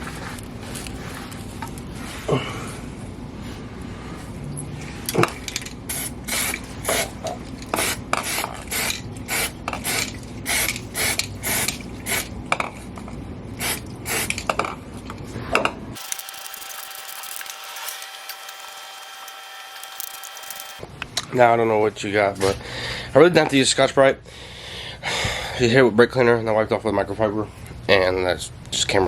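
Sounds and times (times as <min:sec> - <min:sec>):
spray can ball rattling: 0:05.5 - 0:12.3.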